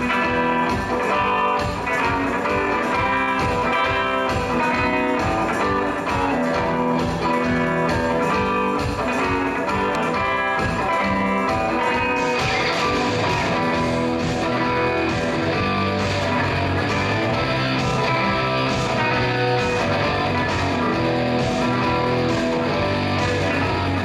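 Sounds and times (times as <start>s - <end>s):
guitar-led band music: 0.0s - 24.0s.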